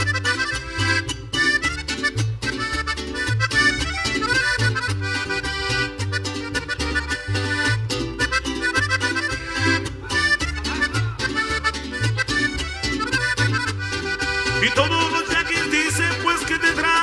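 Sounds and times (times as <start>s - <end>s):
accordion melody: 0.0s - 17.0s
cumbia band playing: 0.0s - 17.0s.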